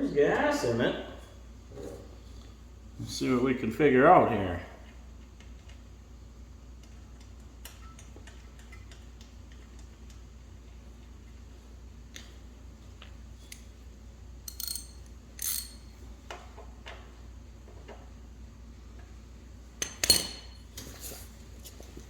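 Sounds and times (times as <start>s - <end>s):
metallic clinks and knocks of tools: 14.5s - 15.9s, 19.8s - 20.7s.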